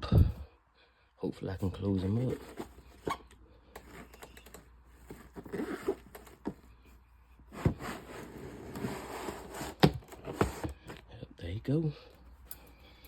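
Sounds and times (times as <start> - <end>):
rustling: 2.0 - 11.1.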